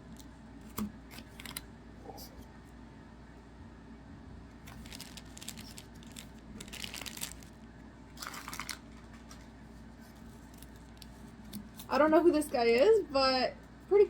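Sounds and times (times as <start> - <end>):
foil wrappers crinkling and tearing: 4.6 - 7.6, 8.2 - 9.5, 10.1 - 12.8.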